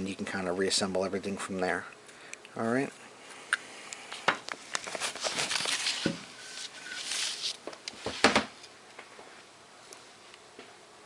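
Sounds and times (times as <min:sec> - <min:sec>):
rustling: 0:04.6 - 0:08.4.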